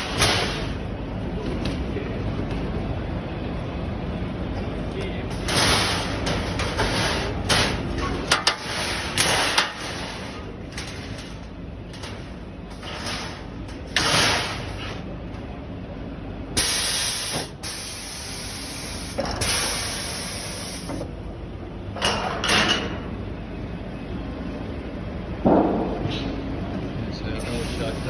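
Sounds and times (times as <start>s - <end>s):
hissing bursts of sheet metal brake: 16.6s - 20.8s.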